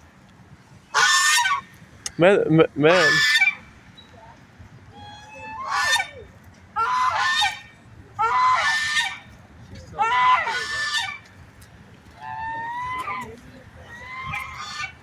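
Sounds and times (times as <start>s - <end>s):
waterfowl harsh calls: 0.9s - 1.7s, 2.9s - 3.6s, 5.0s - 6.2s, 6.8s - 9.3s, 10.0s - 11.2s, 12.2s - 15.0s.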